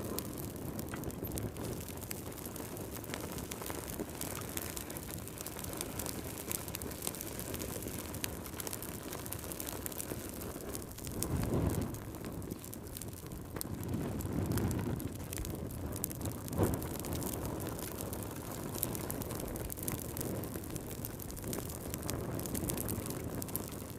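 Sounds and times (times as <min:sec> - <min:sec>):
low rumble of burning: 0:00.0 - 0:23.9
wood fire pops and snaps: 0:00.0 - 0:23.9.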